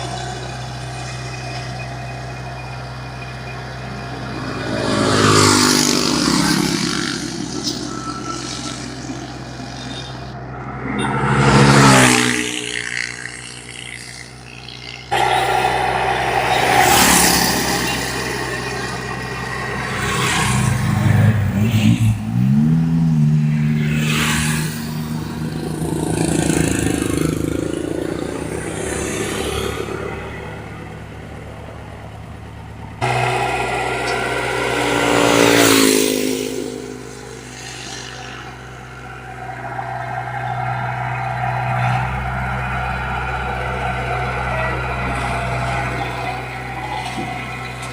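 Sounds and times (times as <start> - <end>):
excavator diesel engine revving: 0.0 - 47.9.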